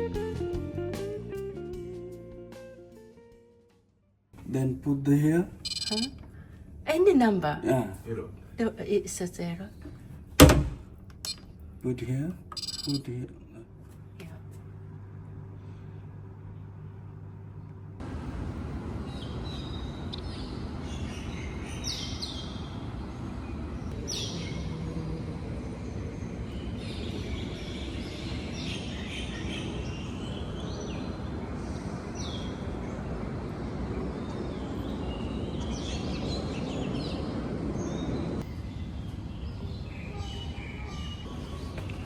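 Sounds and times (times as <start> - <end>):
birds chirping and singing: 25.8 - 33.0, 34.3 - 42.0.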